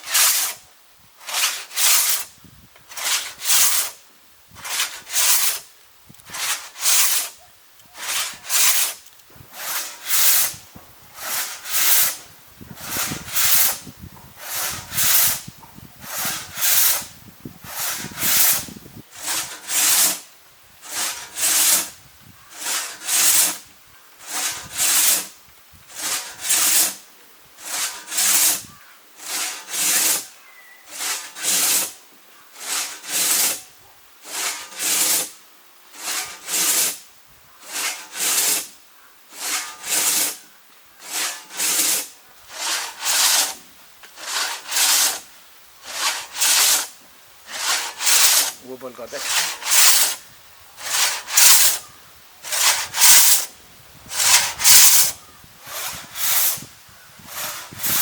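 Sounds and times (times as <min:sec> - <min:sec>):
rasping scraping strokes: 0:00.0 - 0:58.0.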